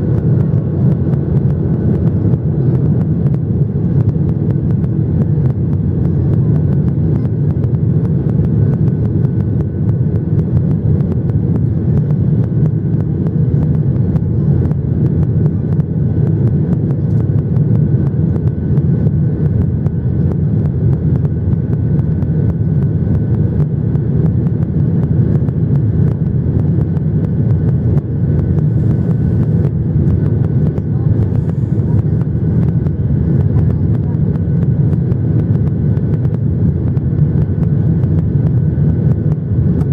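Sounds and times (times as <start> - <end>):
airplane cabin rumble: 0.0 - 39.9.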